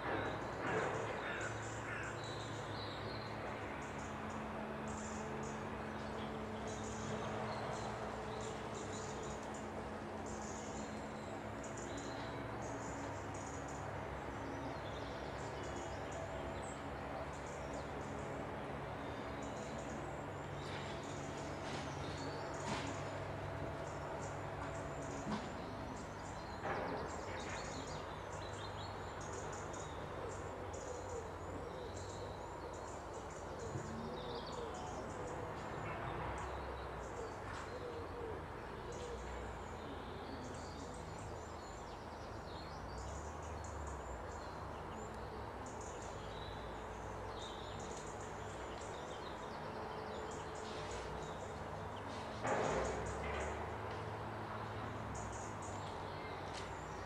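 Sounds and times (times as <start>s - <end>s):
songbirds chirping and singing: 0.0s - 57.0s.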